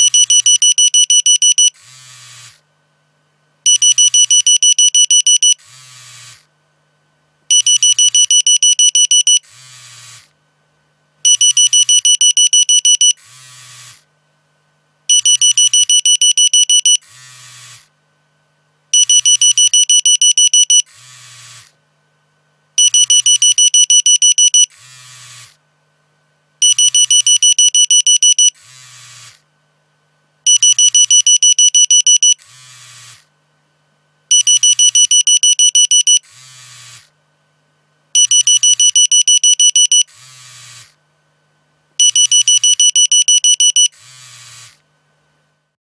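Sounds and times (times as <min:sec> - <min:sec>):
phone alarm beeping: 0:00.0 - 0:01.8, 0:03.7 - 0:05.6, 0:07.5 - 0:09.4, 0:11.3 - 0:13.2, 0:15.1 - 0:17.0, 0:19.0 - 0:20.9, 0:22.8 - 0:24.7, 0:26.6 - 0:28.6, 0:30.5 - 0:32.4, 0:34.3 - 0:36.2, 0:38.2 - 0:40.1, 0:42.0 - 0:43.9.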